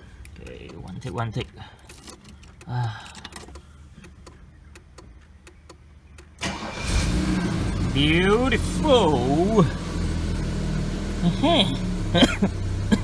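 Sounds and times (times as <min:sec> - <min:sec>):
car engine cranking and starting: 0:00.1 - 0:13.0
sharp clicks: 0:01.8 - 0:06.4.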